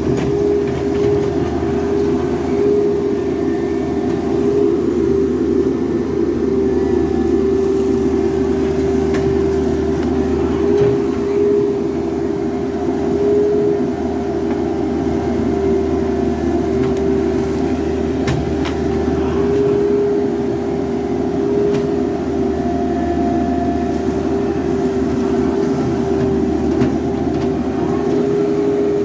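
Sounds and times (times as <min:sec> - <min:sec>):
excavator engine and hydraulics: 0:00.0 - 0:29.0.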